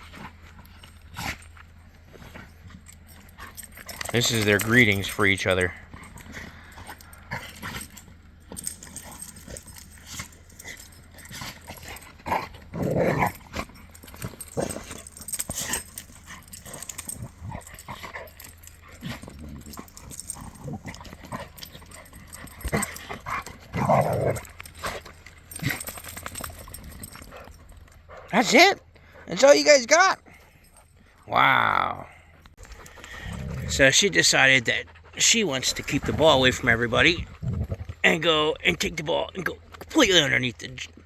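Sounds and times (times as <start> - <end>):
dogs scuffling and clicking: 0.0 - 28.5.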